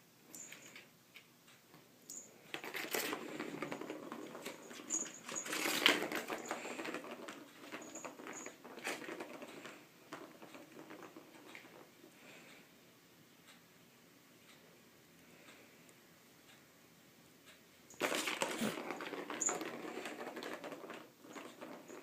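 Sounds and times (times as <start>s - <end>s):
cat scrambling and scratching: 2.5s - 11.8s, 18.0s - 22.0s.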